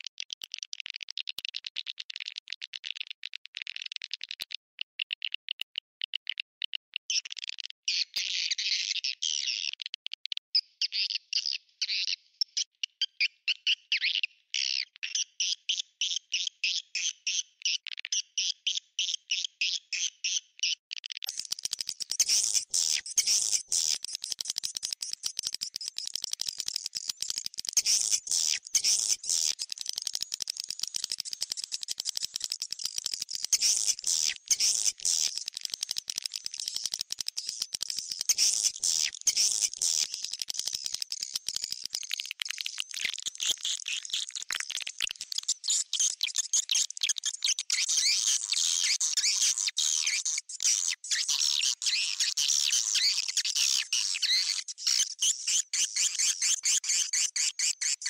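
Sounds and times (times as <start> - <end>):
swiftlet chirps and chattering: 21.3 - 50.2.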